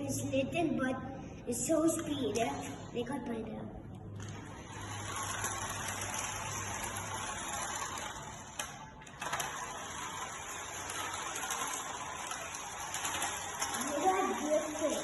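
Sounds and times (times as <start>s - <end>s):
toy car electric motor whirring: 4.2s - 15.0s.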